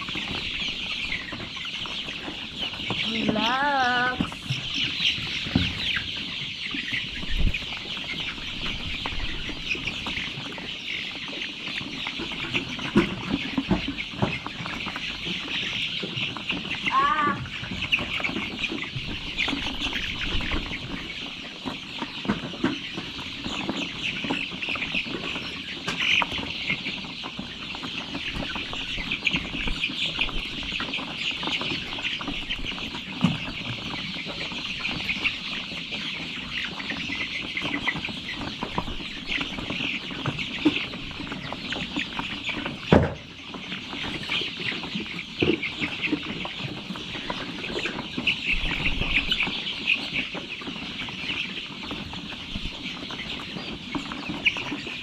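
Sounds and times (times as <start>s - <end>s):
chickens clucking and cheeping: 0.0s - 55.0s.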